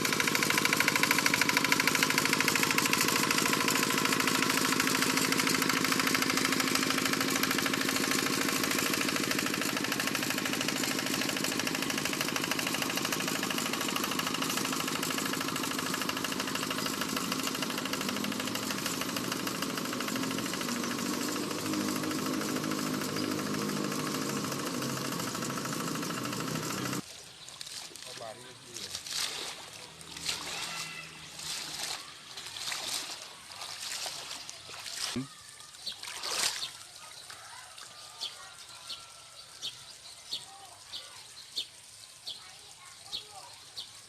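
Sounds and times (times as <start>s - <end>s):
tractor engine running: 0.0s - 27.0s.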